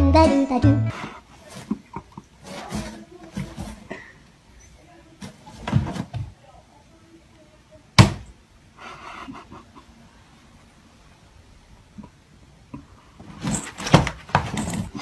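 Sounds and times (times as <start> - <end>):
knocks and bumps: 0.9 - 4.1, 5.2 - 6.4, 8.0 - 8.4, 13.2 - 15.0.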